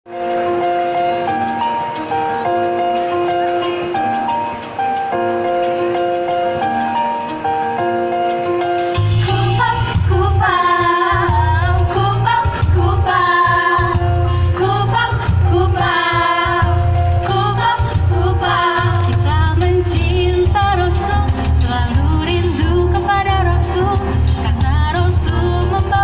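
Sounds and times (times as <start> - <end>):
held keyboard chords: 0.1 - 26.0
bass beat: 9.0 - 26.0
group singing devotional song: 9.4 - 19.2.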